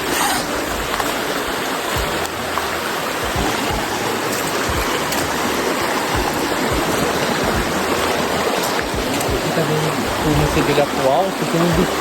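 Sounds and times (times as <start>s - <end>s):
rush of falling water: 0.0s - 12.0s
low thuds: 2.0s - 10.7s.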